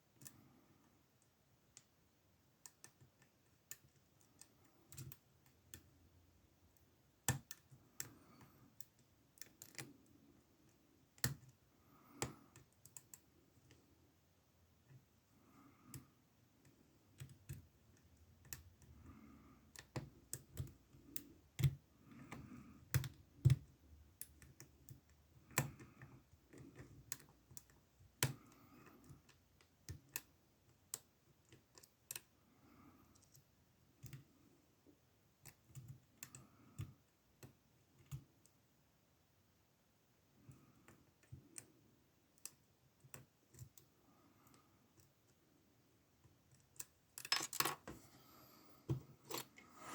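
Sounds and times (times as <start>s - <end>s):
lock pick clicks and metallic taps: 15.9s - 32.4s, 46.2s - 47.9s.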